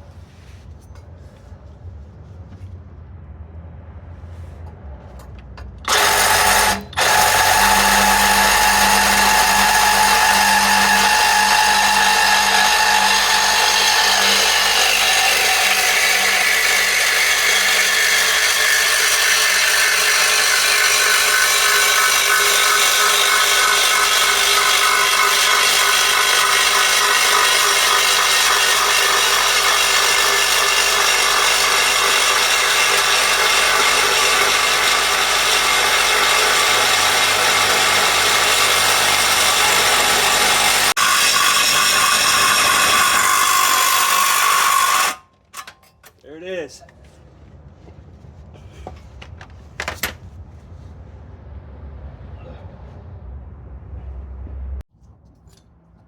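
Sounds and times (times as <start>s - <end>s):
reciprocating saw cutting metal pipe: 5.8s - 46.0s.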